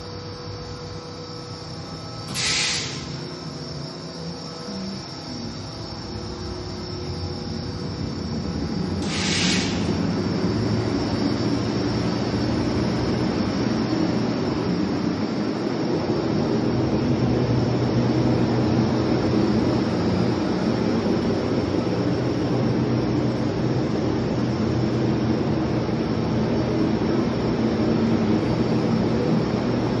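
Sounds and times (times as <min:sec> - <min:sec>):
machine running with whine: 0:00.0 - 0:30.0
brief hiss: 0:02.3 - 0:03.2, 0:09.0 - 0:10.0.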